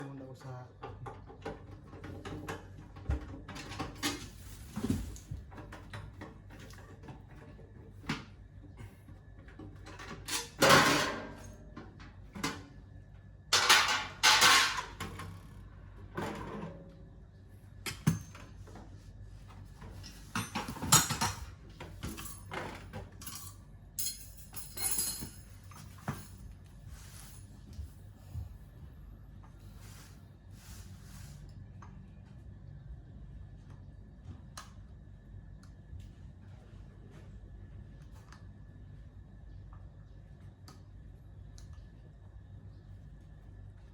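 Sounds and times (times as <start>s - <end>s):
metallic clinks and knocks: 19.9s - 26.7s.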